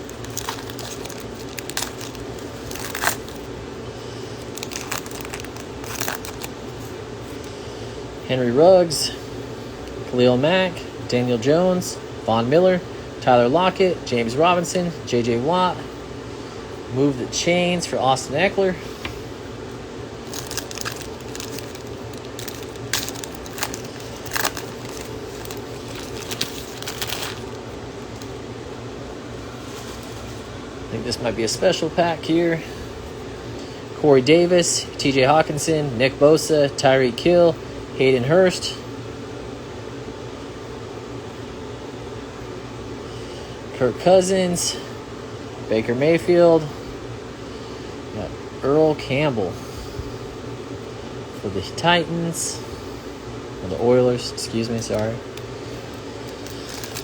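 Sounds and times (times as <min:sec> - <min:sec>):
foil wrapper crinkling and tearing: 0:00.0 - 0:03.5, 0:04.3 - 0:06.6, 0:20.2 - 0:28.3, 0:54.8 - 0:57.0
trading cards being handled: 0:00.0 - 0:03.5, 0:04.2 - 0:07.5, 0:20.2 - 0:28.3, 0:54.8 - 0:57.0
steady low hum: 0:00.0 - 0:57.0.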